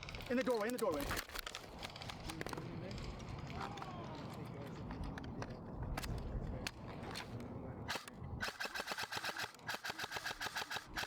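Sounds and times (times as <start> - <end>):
airsoft guns firing: 7.9 - 11.0.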